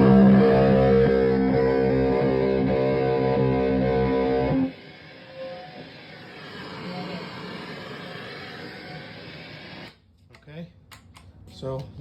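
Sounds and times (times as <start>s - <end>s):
fuzz electric guitar chord: 0.0s - 4.7s.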